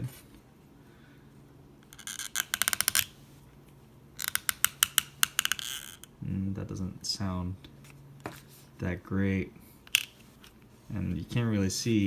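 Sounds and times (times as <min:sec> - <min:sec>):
sunglasses hinge clicking: 0:01.8 - 0:03.1, 0:04.2 - 0:06.1.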